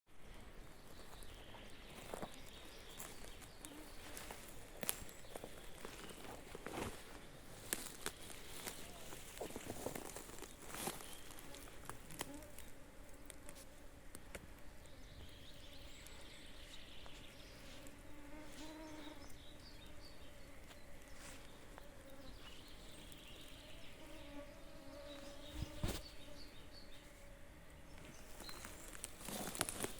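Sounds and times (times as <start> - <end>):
flying insect buzzing: 10.8 - 29.9.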